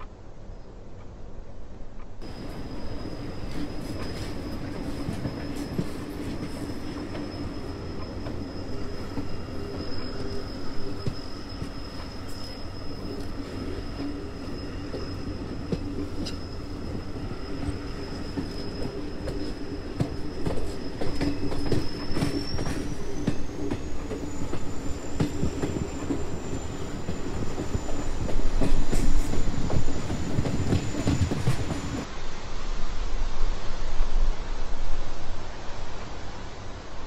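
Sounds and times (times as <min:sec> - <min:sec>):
train rumbling on rails: 0:00.0 - 0:37.0
rail clacks: 0:02.0 - 0:32.1
high wheel squeal: 0:02.2 - 0:32.1
steady hiss: 0:02.2 - 0:37.0.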